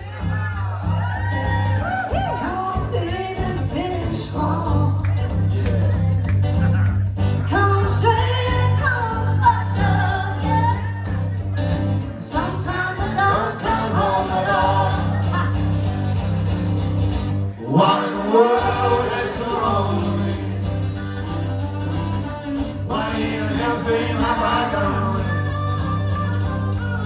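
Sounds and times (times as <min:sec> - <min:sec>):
strummed acoustic guitar: 0:00.0 - 0:27.0
person singing: 0:17.6 - 0:27.0
bass line: 0:18.5 - 0:27.0.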